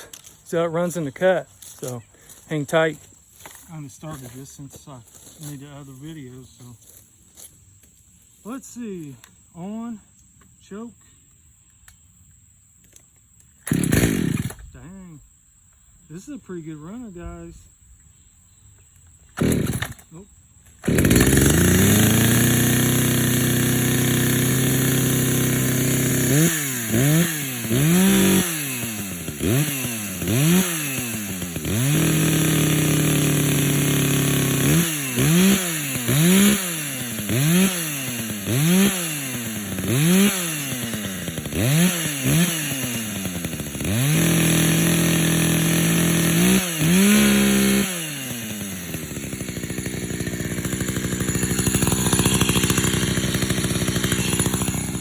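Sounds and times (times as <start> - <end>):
chainsaw revving: 0.0 - 6.6, 13.6 - 15.2, 19.3 - 55.0.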